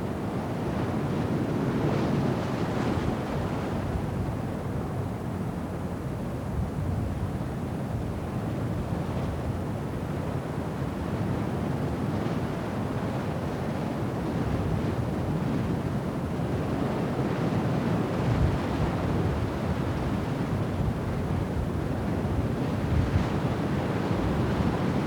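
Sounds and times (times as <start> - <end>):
rough sea: 0.0 - 25.0
storm wind on microphone: 13.2 - 25.0.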